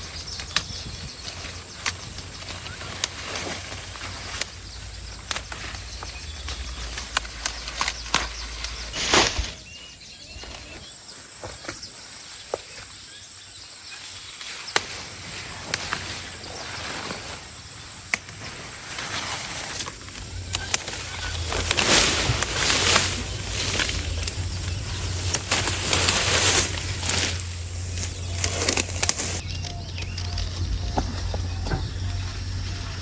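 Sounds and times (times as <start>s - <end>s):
low hum: 0.0s - 9.6s, 15.4s - 33.0s
wing flapping: 18.3s - 29.4s.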